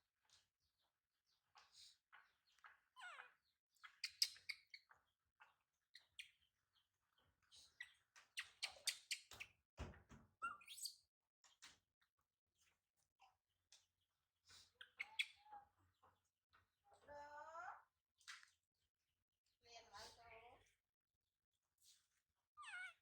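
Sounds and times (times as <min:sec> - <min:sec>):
faint chirps and squeaks: 0:01.5 - 0:11.8, 0:14.4 - 0:18.7, 0:21.8 - 0:23.0.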